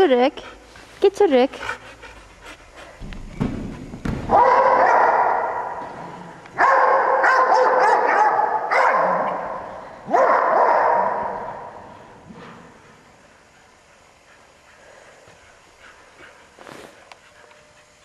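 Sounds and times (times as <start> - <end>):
dog barking long barks: 4.3 - 5.8, 6.6 - 9.4, 10.1 - 11.4.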